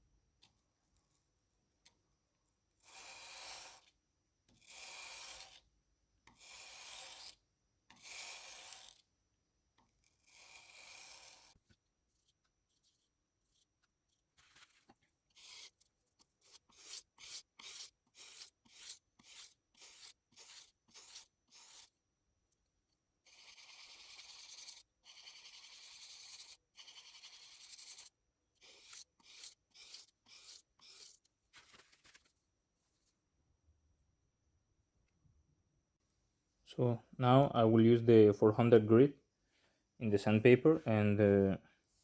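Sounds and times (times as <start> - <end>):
chisel rubbed on wet sandpaper: 2.8 - 3.9, 4.7 - 5.6, 6.4 - 7.4, 14.4 - 22.0, 23.2 - 32.2.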